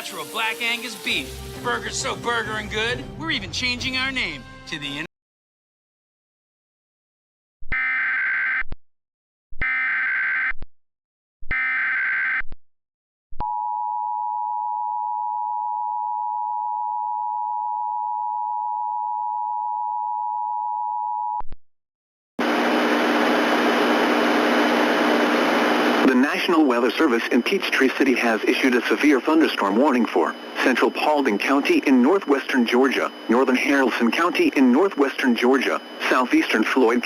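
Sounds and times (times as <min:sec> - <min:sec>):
static hiss: 0:00.0 - 0:02.2
steady electronic attention tone: 0:26.0 - 0:37.0
digital data warble bursts: 0:26.1 - 0:37.0.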